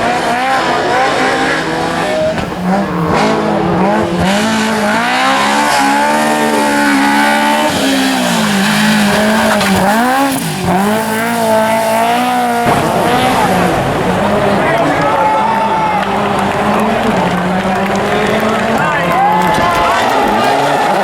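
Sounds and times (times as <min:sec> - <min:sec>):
rally car engine revving: 0:00.0 - 0:21.0.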